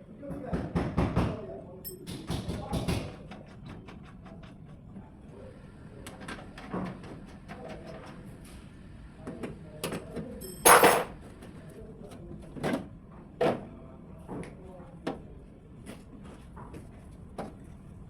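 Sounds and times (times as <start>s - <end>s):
knocks and clatter of installation work: 0.2s - 5.0s, 6.0s - 8.4s, 12.1s - 15.2s.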